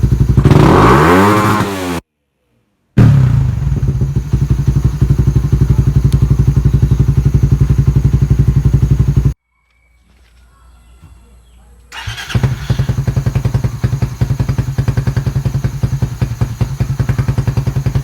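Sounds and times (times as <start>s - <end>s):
motorcycle engine idling loudly: 0.0s - 1.3s, 3.0s - 9.4s, 12.0s - 18.0s.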